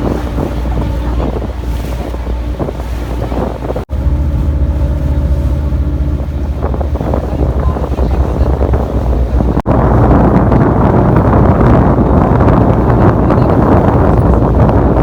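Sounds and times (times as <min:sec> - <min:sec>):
boat engine running: 0:00.0 - 0:15.0
wind buffeting microphone: 0:00.0 - 0:15.0.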